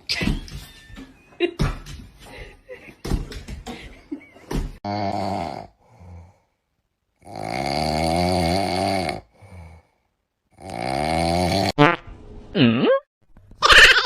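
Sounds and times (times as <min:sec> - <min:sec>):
pet snoring loudly: 0:04.9 - 0:06.4, 0:07.2 - 0:09.9, 0:10.5 - 0:11.8.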